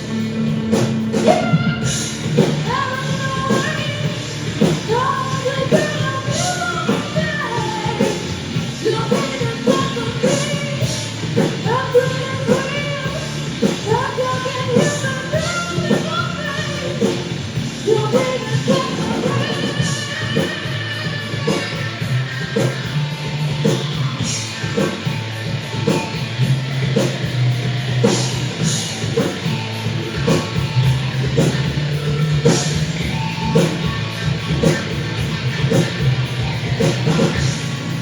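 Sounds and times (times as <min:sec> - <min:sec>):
rock band playing: 0:00.0 - 0:38.0
person singing: 0:01.1 - 0:13.3, 0:17.8 - 0:22.8.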